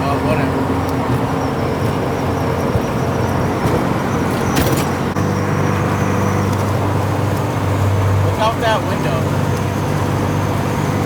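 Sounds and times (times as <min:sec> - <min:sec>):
car engine drone: 0:00.0 - 0:11.0
tyre and road noise: 0:00.0 - 0:11.0.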